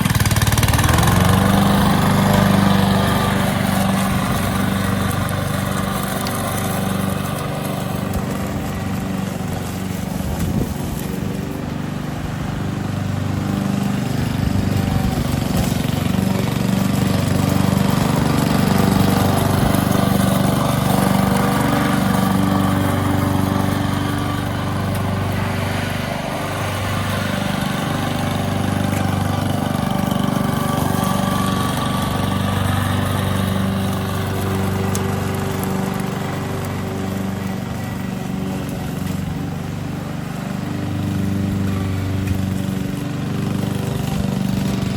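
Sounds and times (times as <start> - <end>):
lawn mower engine running: 0.0 - 44.9.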